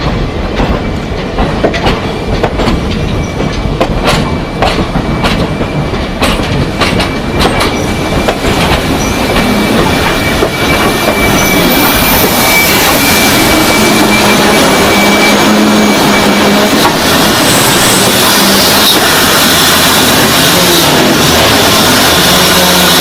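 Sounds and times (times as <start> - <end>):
train running noise: 0.0 - 23.0
train wheels clicking on rails: 0.0 - 23.0
high wheel squeal: 7.0 - 23.0.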